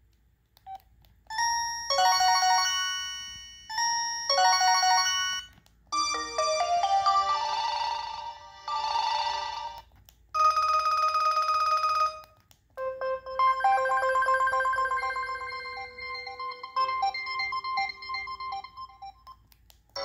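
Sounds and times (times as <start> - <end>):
melodic ringtone: 1.3 - 9.8, 10.4 - 19.4
steady phone ring: 1.4 - 9.8, 13.4 - 19.1
warbling phone ring: 13.4 - 19.2.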